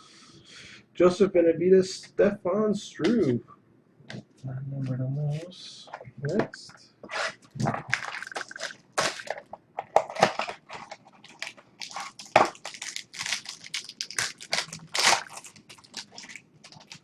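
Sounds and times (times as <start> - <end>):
foil wrapper tearing and crinkling: 7.8 - 9.4, 10.0 - 17.0.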